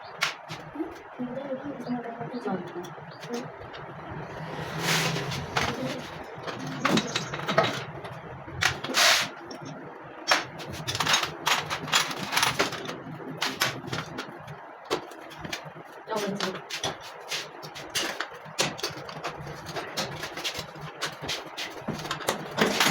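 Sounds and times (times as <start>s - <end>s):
hand tools clicking and scraping: 3.2s - 22.9s.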